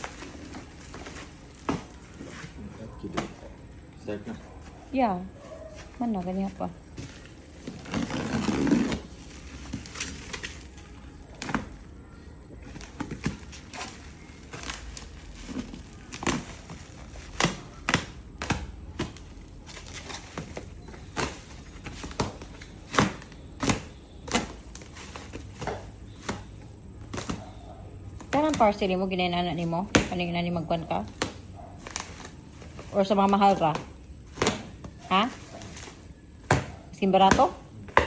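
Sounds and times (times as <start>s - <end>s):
packaging clicks and knocks: 12.6s - 28.7s.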